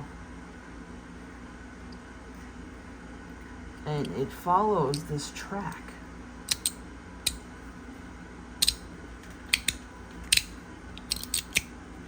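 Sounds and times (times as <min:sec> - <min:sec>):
metal fidget slider clicking: 0:09.5 - 0:11.7.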